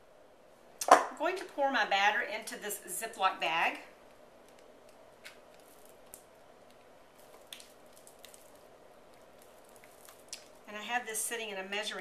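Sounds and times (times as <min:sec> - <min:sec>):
batter squishing in plastic bag: 0:04.0 - 0:10.8.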